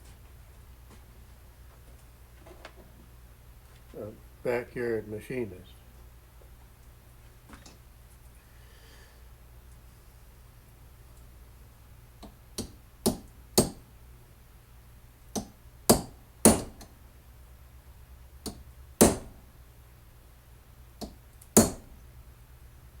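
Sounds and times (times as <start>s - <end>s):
hammer striking metal pin: 12.6s - 13.8s, 15.4s - 16.9s, 18.5s - 19.4s, 21.0s - 21.9s.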